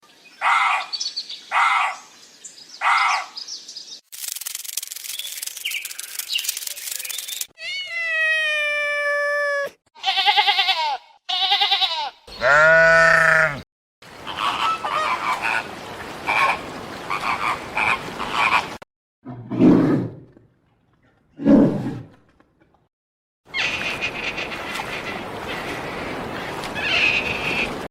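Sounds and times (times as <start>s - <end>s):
bleat-like call: 7.6s - 13.6s
many animals calling together: 12.4s - 13.6s
animal calls: 14.2s - 15.7s.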